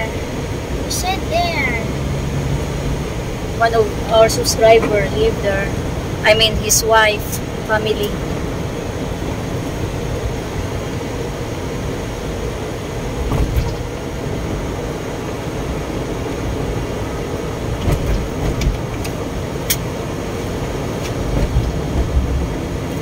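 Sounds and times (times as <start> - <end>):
car road and engine noise: 0.0 - 23.0
heavy rain on car: 0.0 - 23.0.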